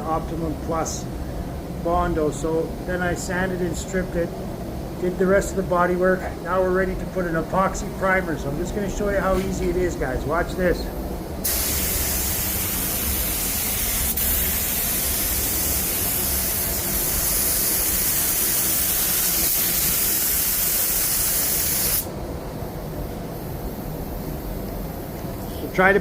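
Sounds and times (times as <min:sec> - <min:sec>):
spray gun hissing: 0:11.4 - 0:22.1.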